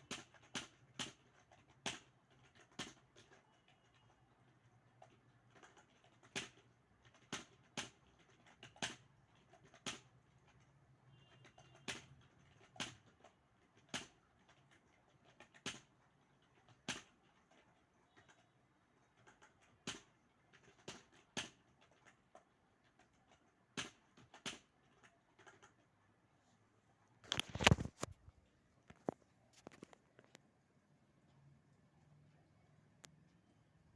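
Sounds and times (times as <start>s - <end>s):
computer keyboard typing: 0.0s - 25.9s.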